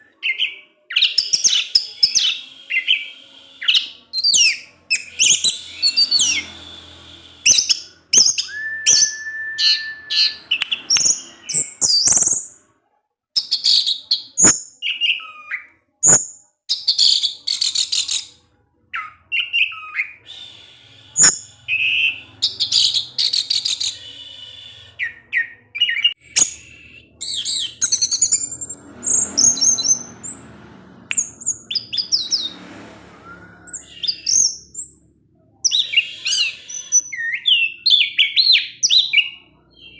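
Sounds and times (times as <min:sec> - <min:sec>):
thrush singing: 0:01.2 - 0:12.0.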